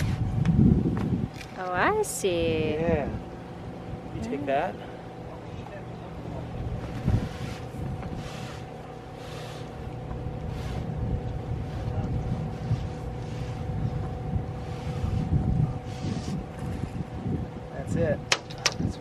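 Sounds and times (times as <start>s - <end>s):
wind rumbling on microphone: 0.0s - 4.4s, 6.2s - 19.0s
faint steady hum: 0.0s - 19.0s.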